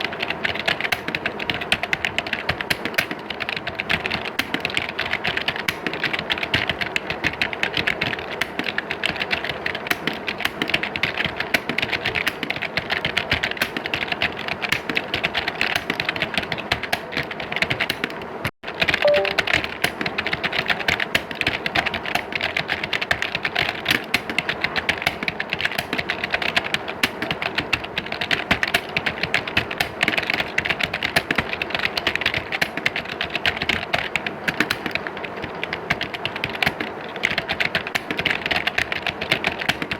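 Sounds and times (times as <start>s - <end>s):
keyboard key clicks: 19.0s - 19.5s.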